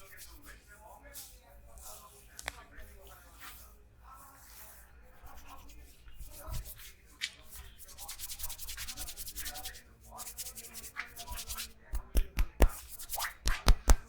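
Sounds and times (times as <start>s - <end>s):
hands rubbing hair: 0.0s - 14.0s
hands smacking: 11.9s - 14.0s.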